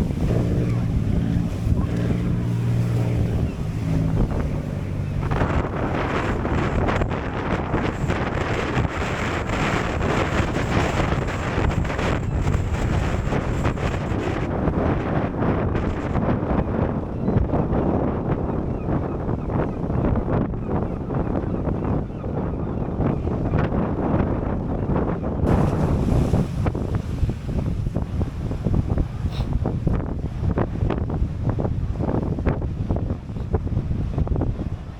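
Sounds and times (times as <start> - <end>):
boat engine humming: 0.0 - 16.0, 25.5 - 34.9
choppy sea: 0.0 - 34.9
wind buffeting microphone: 0.0 - 34.9.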